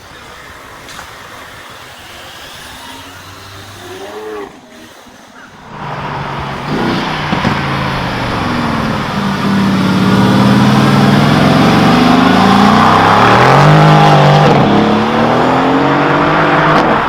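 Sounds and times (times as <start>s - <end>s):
sports car engine running: 5.6s - 17.0s.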